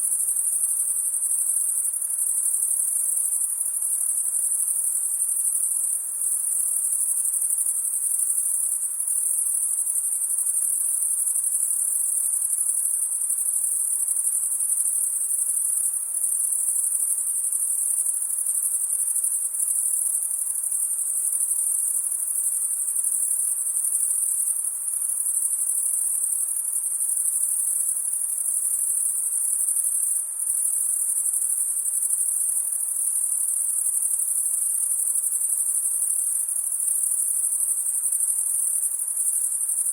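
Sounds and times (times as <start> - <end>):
crickets chirping: 0.0 - 39.9.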